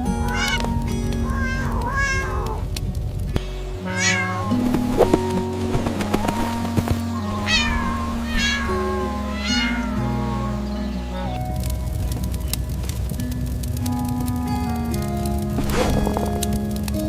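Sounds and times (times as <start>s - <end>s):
cat meowing: 0.0s - 2.6s, 3.8s - 11.4s
background music with held notes: 0.0s - 17.0s.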